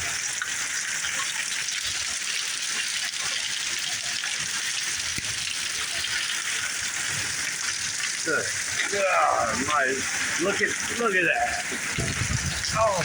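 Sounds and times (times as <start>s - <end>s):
heavy rain pouring: 0.0s - 13.0s.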